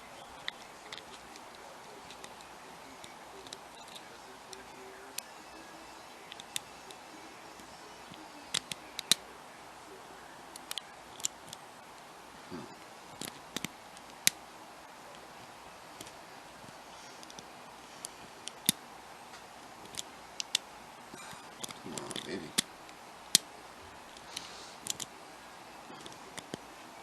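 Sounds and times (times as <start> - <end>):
low hiss: 0.0 - 27.0
lock pick clicking against pins: 6.1 - 9.2, 10.5 - 11.6, 13.2 - 14.4, 16.0 - 16.2, 17.2 - 18.8, 19.8 - 20.6, 21.2 - 23.5, 24.1 - 25.1, 26.0 - 26.6.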